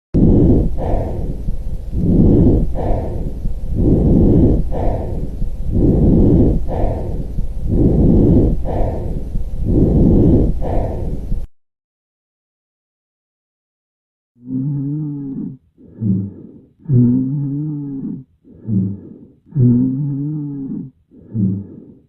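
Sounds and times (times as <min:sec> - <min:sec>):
breathing through a stethoscope: 0:00.2 - 0:11.5, 0:14.4 - 0:22.0.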